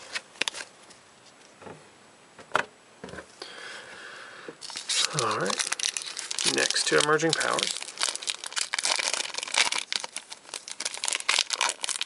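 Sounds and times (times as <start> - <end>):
foil pack rustling: 4.6 - 12.0.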